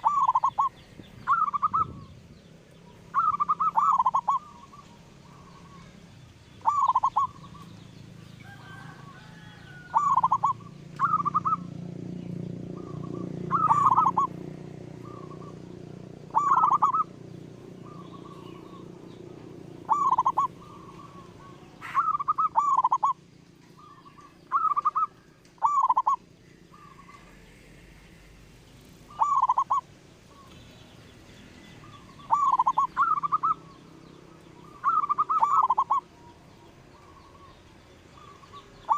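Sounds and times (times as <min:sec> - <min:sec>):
dove cooing: 0:00.0 - 0:02.2, 0:03.0 - 0:06.0, 0:06.6 - 0:07.8, 0:08.4 - 0:28.2, 0:29.1 - 0:30.6, 0:31.8 - 0:38.9.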